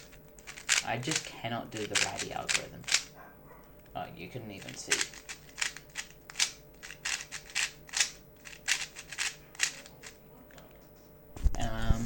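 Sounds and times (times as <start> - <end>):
speed cube plastic clacks: 0.0 - 3.1, 4.6 - 10.7.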